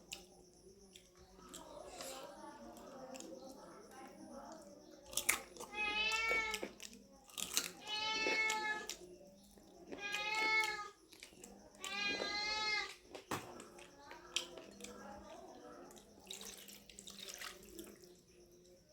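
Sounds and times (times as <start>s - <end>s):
cat meowing: 5.7s - 6.6s, 7.8s - 8.9s, 10.0s - 10.9s, 11.8s - 12.9s.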